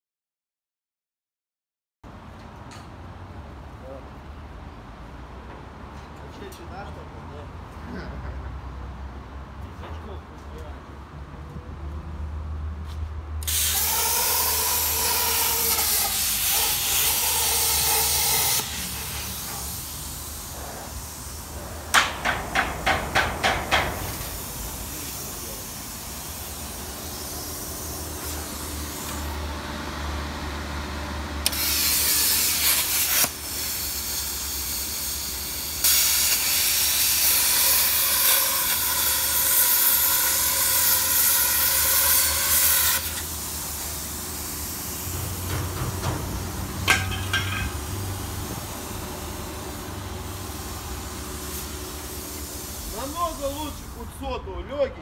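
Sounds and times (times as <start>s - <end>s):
plasma cutter torch hissing: 13.4s - 21.7s, 23.5s - 29.4s, 31.4s - 47.2s, 50.2s - 54.1s.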